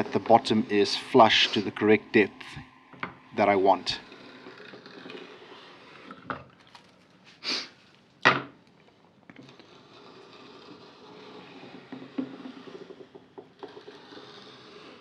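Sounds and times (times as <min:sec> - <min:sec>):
blade scraping wood: 0:00.0 - 0:02.5, 0:03.4 - 0:06.9, 0:09.3 - 0:15.0.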